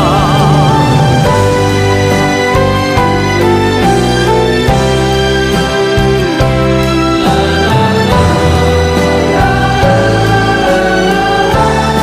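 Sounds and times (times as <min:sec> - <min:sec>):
instrumental background music: 0:00.0 - 0:12.0.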